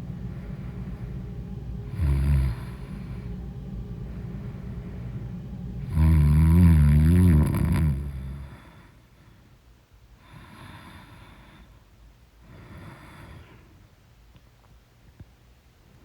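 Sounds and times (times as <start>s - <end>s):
person snoring: 1.8s - 3.4s, 4.1s - 9.0s.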